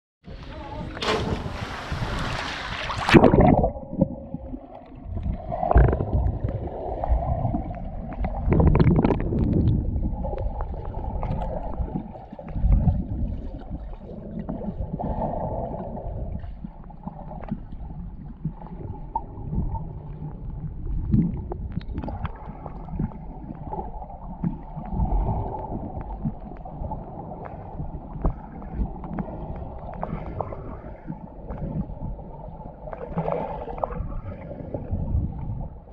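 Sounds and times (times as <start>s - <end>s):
water gurgling and sloshing: 0.3s - 35.9s.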